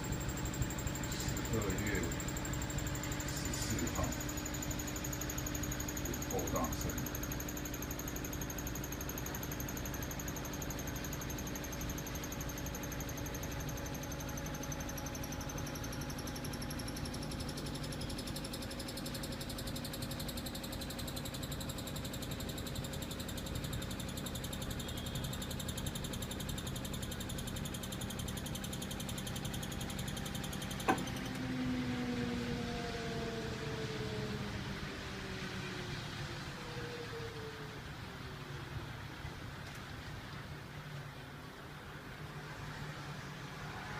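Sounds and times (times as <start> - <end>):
high whine falling in pitch: 0.0 - 23.5, 29.9 - 38.9
washing machine spinning: 0.0 - 35.2.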